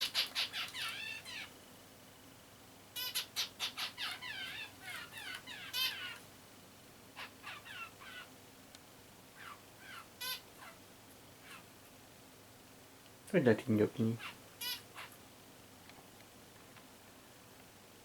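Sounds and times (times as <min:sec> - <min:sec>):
finch nasal calls: 0:00.0 - 0:01.5, 0:03.0 - 0:06.2, 0:07.2 - 0:08.3, 0:09.4 - 0:10.8, 0:14.1 - 0:15.2.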